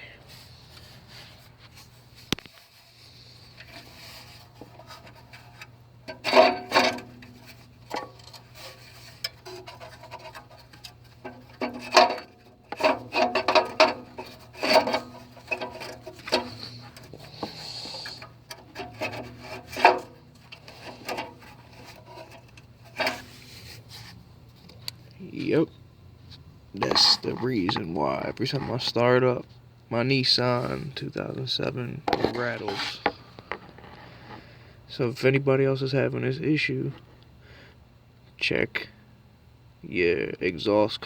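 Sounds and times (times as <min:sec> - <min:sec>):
heat shield metallic rattling: 0:03.4 - 0:23.8.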